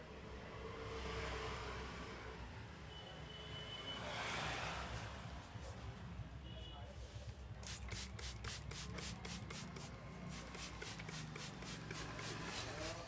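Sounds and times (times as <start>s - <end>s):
hands rubbing hair and scalp: 7.8s - 13.0s.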